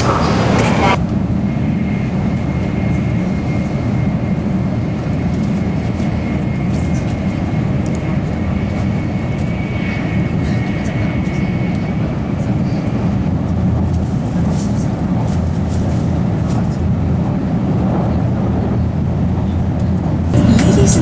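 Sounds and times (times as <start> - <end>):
train low mechanical hum: 0.0 - 21.0
high-pitched whine: 20.4 - 21.0.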